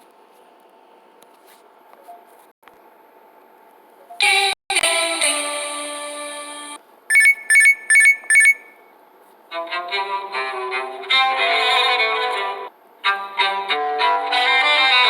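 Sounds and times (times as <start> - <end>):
high electronic beeps: 7.1 - 8.8
melodic alarm ringtone: 7.1 - 8.8.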